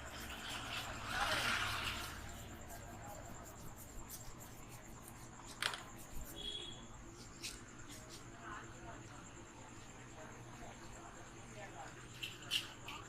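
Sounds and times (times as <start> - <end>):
hands rubbing hair: 0.0 - 6.5.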